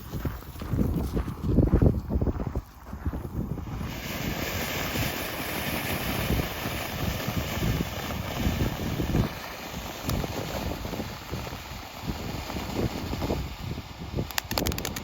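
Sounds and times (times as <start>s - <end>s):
low crackle: 3.4s - 13.5s, 14.2s - 15.0s
firework fountain hissing: 3.4s - 15.0s.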